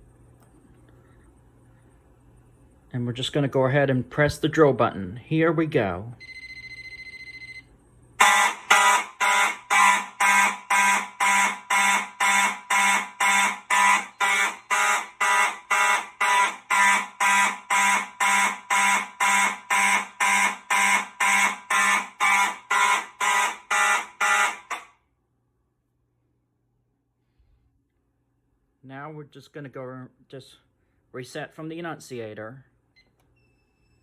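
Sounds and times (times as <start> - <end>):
fire alarm horn blasts: 8.2 - 25.0.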